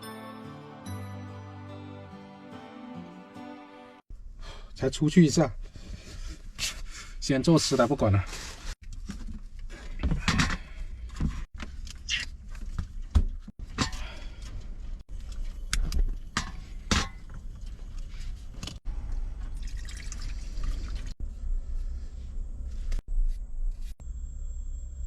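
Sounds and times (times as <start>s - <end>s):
water pouring and splashing: 17.6s - 21.2s.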